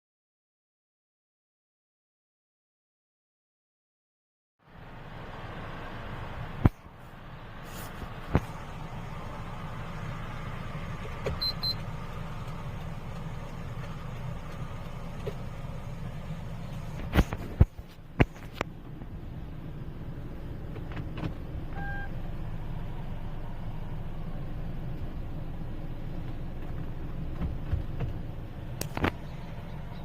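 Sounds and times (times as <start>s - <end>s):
car cabin noise: 4.8s - 30.0s
electronic alert beeps: 11.4s - 11.8s.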